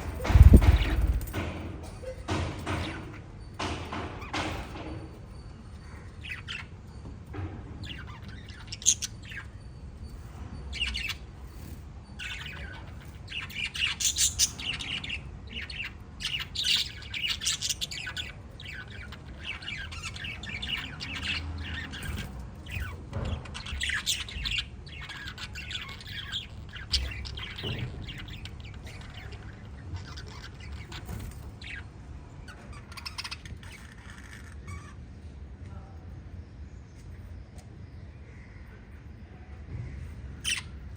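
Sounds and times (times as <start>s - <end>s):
lovebirds chirping and squawking: 0.0s - 35.5s, 36.7s - 40.9s.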